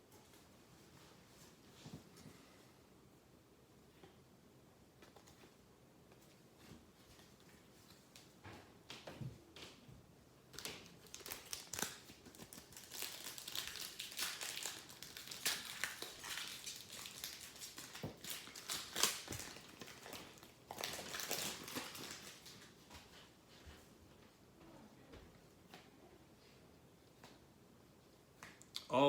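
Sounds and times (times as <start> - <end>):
packaging crinkling and rustling: 10.5 - 22.8.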